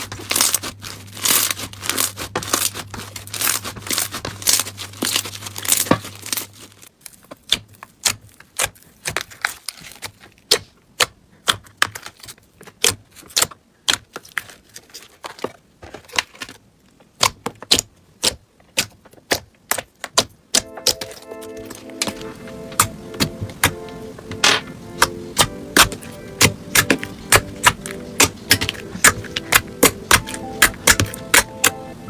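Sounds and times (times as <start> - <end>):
slime clicking and popping: 25.0 - 31.8.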